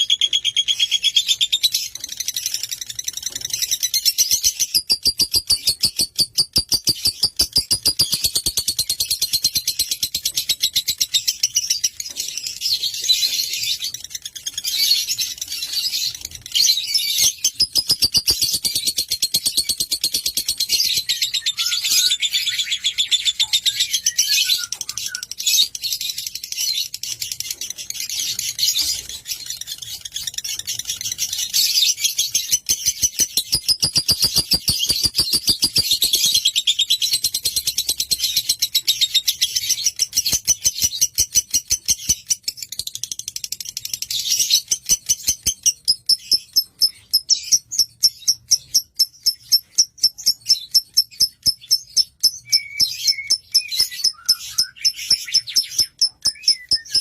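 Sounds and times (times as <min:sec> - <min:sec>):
lovebird chattering trill: 0:17.3 - 0:20.9, 0:32.4 - 0:37.1.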